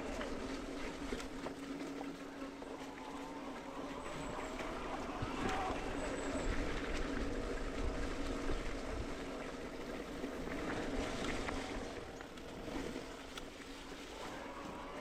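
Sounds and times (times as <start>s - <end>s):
mountain bike rumble and rattle: 3.7s - 15.0s
wind buffeting microphone: 3.8s - 13.4s.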